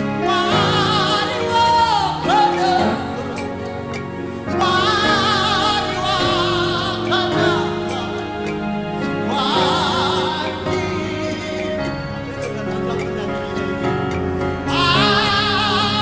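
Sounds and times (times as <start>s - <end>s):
solo voice singing: 0.0s - 16.0s
sustained chords: 0.0s - 16.0s.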